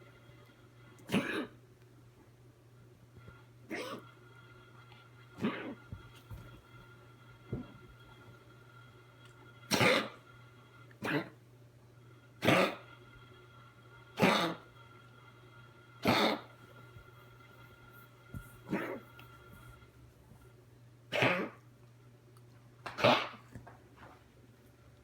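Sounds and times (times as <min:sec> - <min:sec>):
dog coughing: 0:01.0 - 0:01.6, 0:03.7 - 0:04.2, 0:05.4 - 0:06.0, 0:09.7 - 0:10.2, 0:11.0 - 0:11.4, 0:12.4 - 0:12.9, 0:14.2 - 0:14.7, 0:16.0 - 0:16.6, 0:18.4 - 0:19.1, 0:21.1 - 0:21.6, 0:22.9 - 0:23.6.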